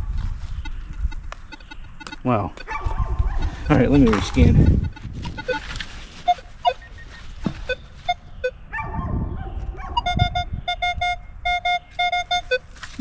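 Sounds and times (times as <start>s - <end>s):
metal detector beeping: 0.0s - 8.6s, 10.0s - 13.0s
digging scrapes and thumps: 2.0s - 8.2s.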